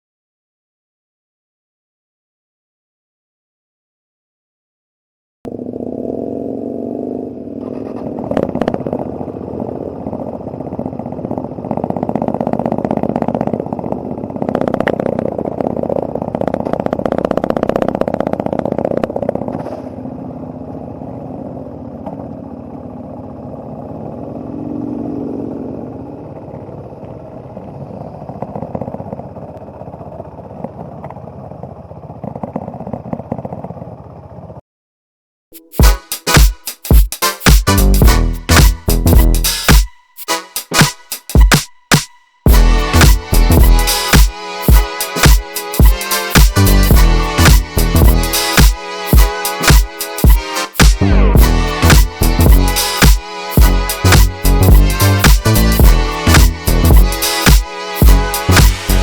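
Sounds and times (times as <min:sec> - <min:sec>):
motorcycle engine revving: 0:05.5 - 0:34.6, 0:37.7 - 0:40.0, 0:42.5 - 0:59.0.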